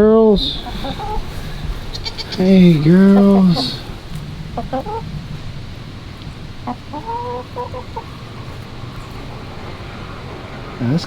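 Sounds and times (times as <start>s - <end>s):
hens clucking: 0.0s - 11.0s.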